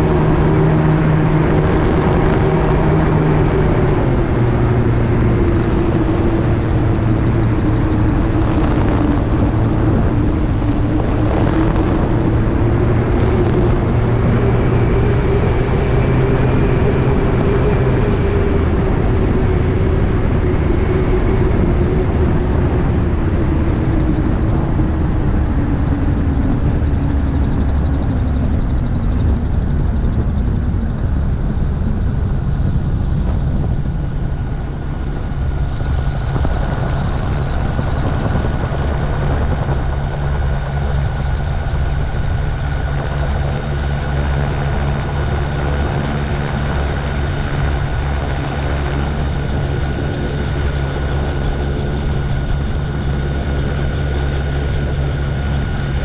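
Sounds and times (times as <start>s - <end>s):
engine and propeller running: 0.0s - 56.0s
rushing air: 32.7s - 53.3s.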